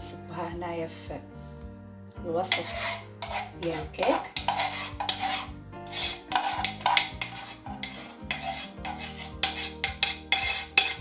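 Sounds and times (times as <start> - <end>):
faint background music: 0.0 - 11.0
utensil scraping a saucepan: 2.3 - 11.0.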